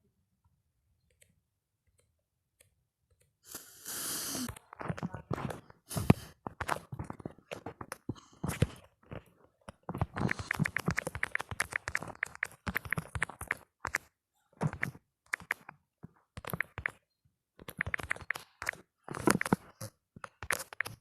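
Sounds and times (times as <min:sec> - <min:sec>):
phone keyboard typing clicks: 0:10.0 - 0:14.0, 0:14.6 - 0:15.8, 0:16.4 - 0:17.0, 0:17.6 - 0:19.7, 0:20.3 - 0:21.0.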